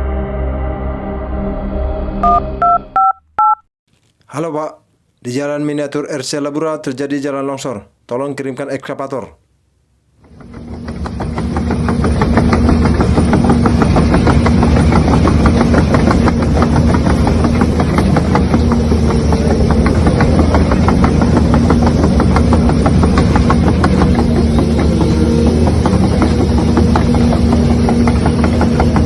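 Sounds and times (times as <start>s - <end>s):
excavator engine idling with knocking: 10.2s - 29.0s.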